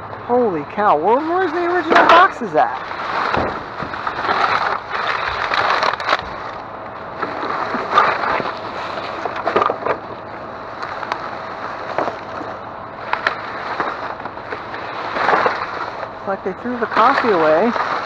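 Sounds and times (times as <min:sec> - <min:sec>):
rummaging through trash: 0:00.4 - 0:18.0.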